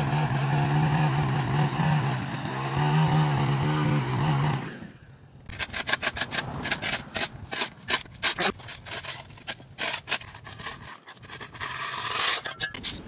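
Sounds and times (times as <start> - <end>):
rake scraping ground: 5.5 - 13.0.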